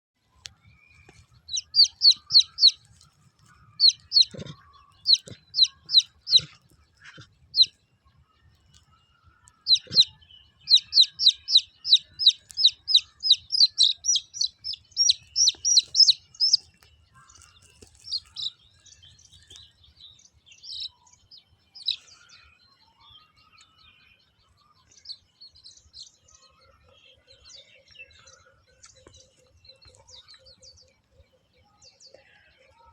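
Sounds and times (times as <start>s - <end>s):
high sharp animal chirping: 1.5s - 3.0s, 3.7s - 7.8s, 9.6s - 16.7s.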